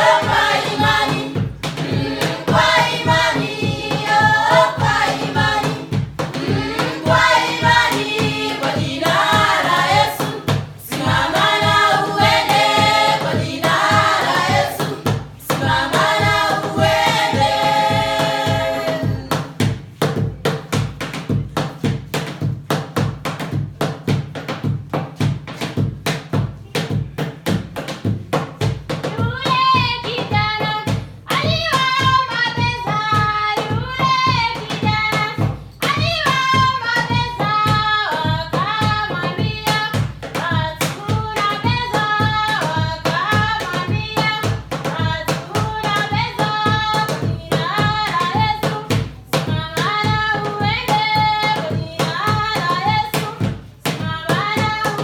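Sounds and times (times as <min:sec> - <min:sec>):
people singing: 0:00.0 - 0:19.6, 0:40.5 - 0:55.0
fast hand-drum rhythm: 0:00.0 - 0:55.0.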